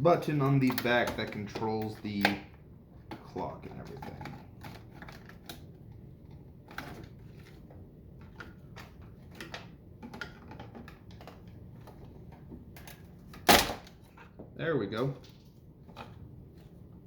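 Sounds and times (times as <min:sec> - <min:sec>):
plastic parts clicking and tapping: 0:00.2 - 0:13.5.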